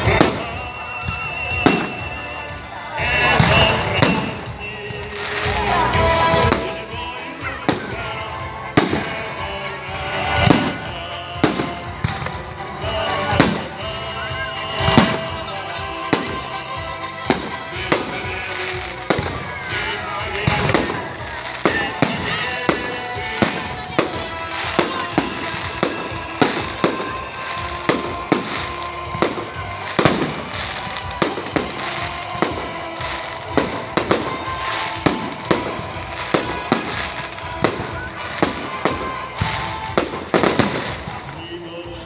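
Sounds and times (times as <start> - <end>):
fireworks bangs: 0.0 - 8.2, 17.3 - 42.0
music: 0.0 - 42.0.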